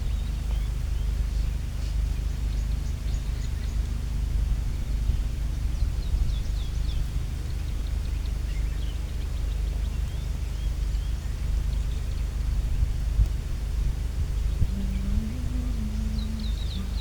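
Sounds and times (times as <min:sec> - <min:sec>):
steady low rumble: 0:00.0 - 0:17.0
small birds chirping: 0:14.2 - 0:17.0.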